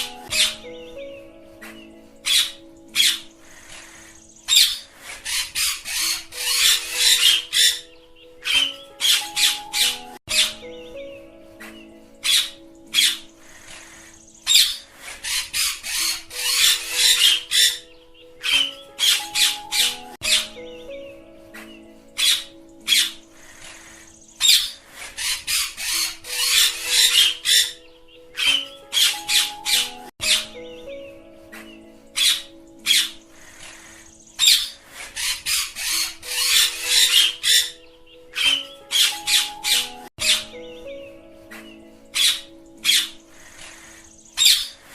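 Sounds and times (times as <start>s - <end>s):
parrots squawking: 4.5s - 10.5s, 13.8s - 20.4s, 22.2s - 30.5s, 32.2s - 40.4s, 43.8s - 44.8s.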